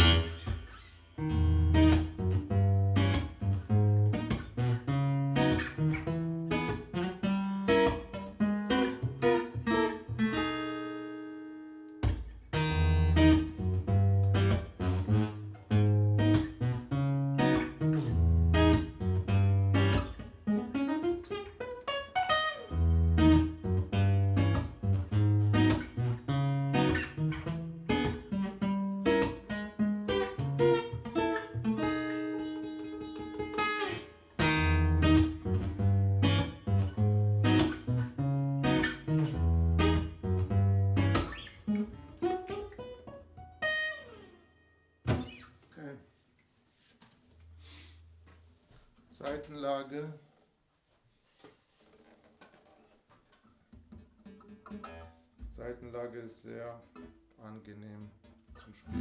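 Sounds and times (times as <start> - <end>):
guitar slide: 0.0 - 11.4, 12.0 - 44.5, 58.7 - 59.0
acoustic guitar plucking notes: 0.0 - 45.6, 53.7 - 59.0.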